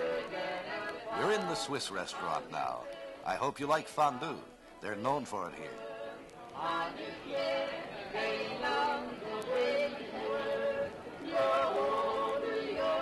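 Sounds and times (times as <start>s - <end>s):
folk music with held notes: 0.0s - 13.0s.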